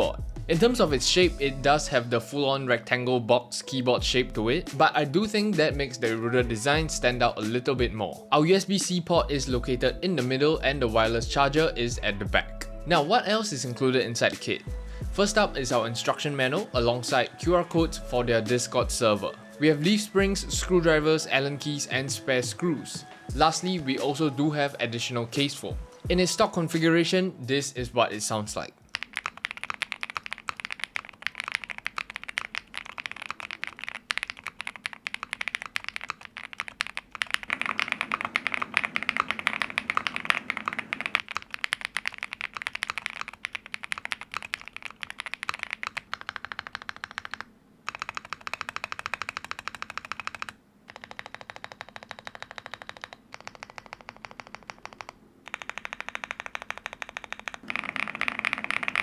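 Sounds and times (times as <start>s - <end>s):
typing on keyboard: 28.8s - 59.0s.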